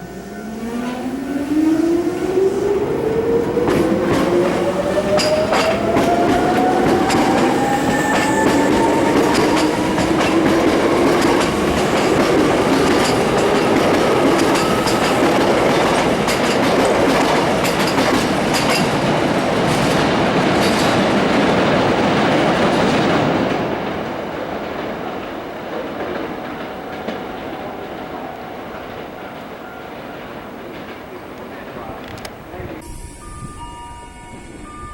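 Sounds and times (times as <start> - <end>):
wheels clicking over rail joints: 3.5 - 27.6
electric train motor whine: 32.0 - 34.9.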